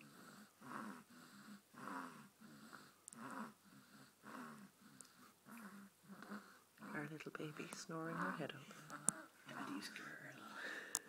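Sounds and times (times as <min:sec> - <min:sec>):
baby snoring faintly: 0:00.0 - 0:10.9.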